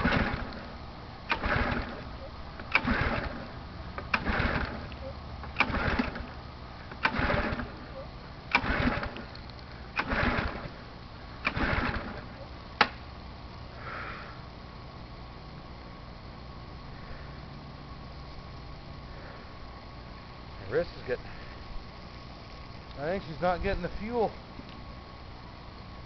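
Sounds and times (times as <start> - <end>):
recoil cord pull-start cranking: 0.0 - 0.6, 1.3 - 7.9, 8.5 - 10.8, 11.4 - 13.0.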